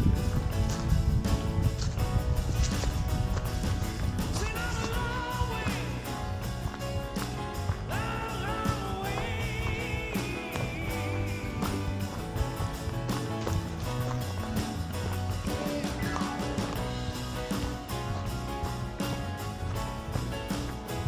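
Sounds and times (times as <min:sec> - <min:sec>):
rock song with drums: 0:00.0 - 0:21.0.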